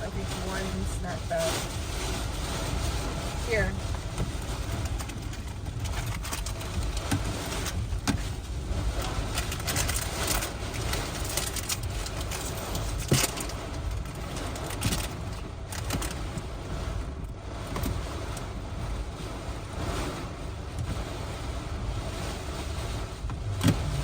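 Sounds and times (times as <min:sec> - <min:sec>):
strong gusting wind: 0:00.0 - 0:11.3, 0:16.8 - 0:24.0.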